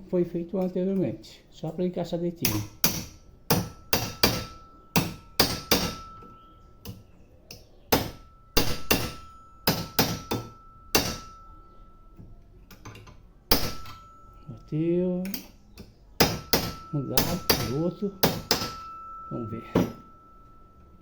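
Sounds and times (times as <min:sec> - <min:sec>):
metal-on-metal knocks: 0:02.5 - 0:11.5, 0:12.2 - 0:14.4, 0:15.3 - 0:20.4.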